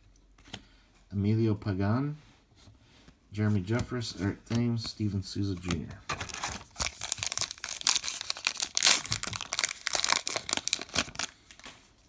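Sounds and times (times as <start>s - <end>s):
wrapper crinkling and tearing: 5.7s - 12.0s.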